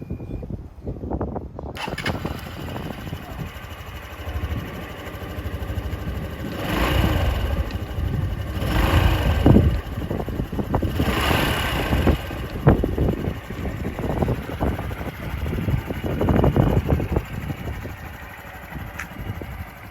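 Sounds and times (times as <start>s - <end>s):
motorcycle engine revving: 1.8s - 19.9s.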